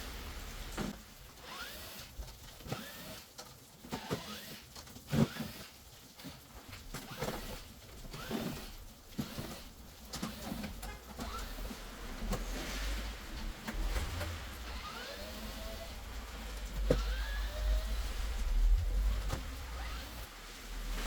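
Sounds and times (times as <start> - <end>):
plastic squeaks: 6.9 - 20.3.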